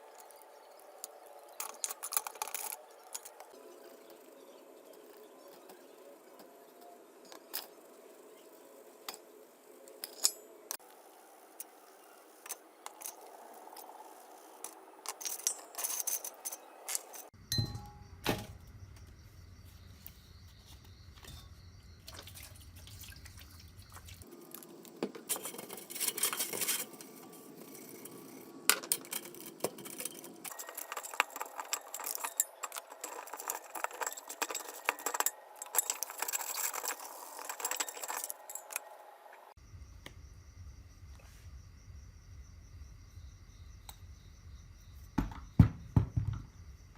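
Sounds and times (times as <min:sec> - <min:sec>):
small metal tools clinking: 0:01.0 - 0:03.6, 0:12.4 - 0:18.0, 0:25.3 - 0:38.9.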